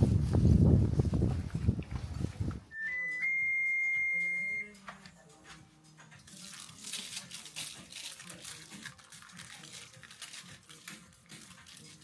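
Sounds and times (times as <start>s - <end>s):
kitchen crackling and rustling: 4.8s - 12.0s.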